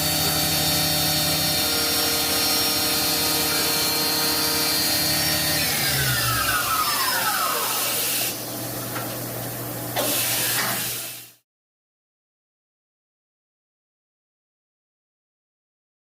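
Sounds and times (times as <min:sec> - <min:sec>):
mill spindle winding down: 0:00.0 - 0:08.4
machine hum: 0:00.0 - 0:10.0.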